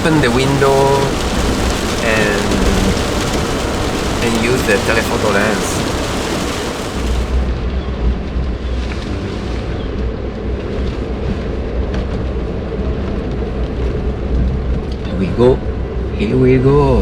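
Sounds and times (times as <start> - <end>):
car engine hum: 0.0 - 7.5
heavy rain on car: 0.0 - 7.5
road noise: 0.0 - 7.5.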